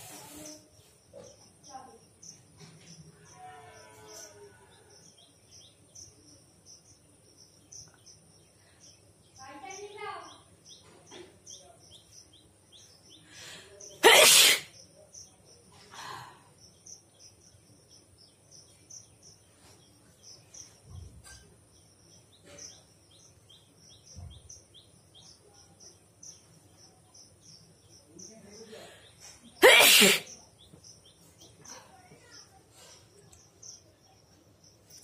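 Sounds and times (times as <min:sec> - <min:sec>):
person sneezing: 0:14.0 - 0:14.7, 0:29.6 - 0:30.3.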